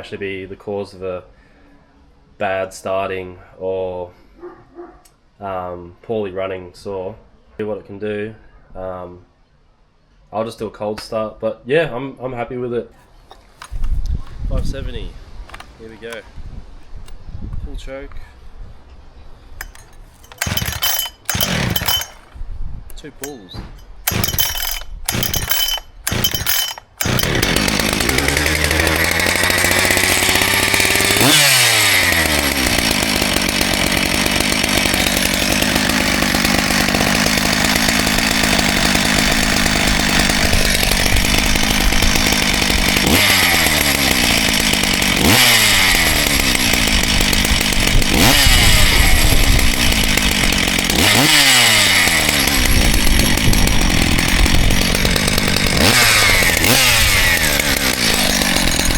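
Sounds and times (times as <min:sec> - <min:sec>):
chainsaw starting and revving: 0:15.5 - 0:16.2, 0:19.6 - 0:58.9.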